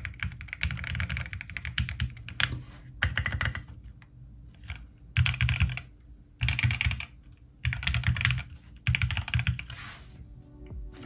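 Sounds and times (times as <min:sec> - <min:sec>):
mechanical keyboard typing: 0:00.0 - 0:02.4, 0:03.0 - 0:03.7, 0:04.6 - 0:09.7.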